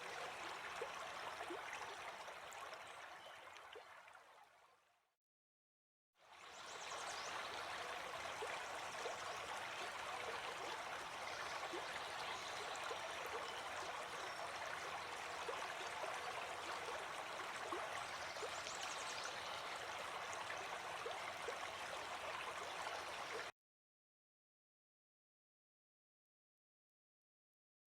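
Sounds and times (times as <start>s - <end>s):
stream water flowing: 0.0s - 4.6s, 6.3s - 23.5s.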